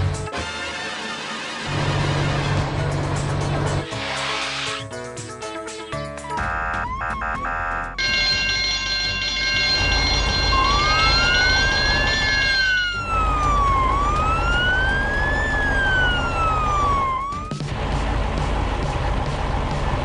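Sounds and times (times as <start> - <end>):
siren wailing: 6.4 - 17.6
held chord of tones: 6.5 - 13.6
low engine rumble: 8.0 - 20.0.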